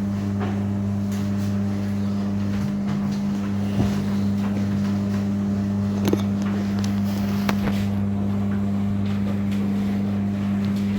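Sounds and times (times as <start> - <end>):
tumble dryer hum: 0.0 - 10.9.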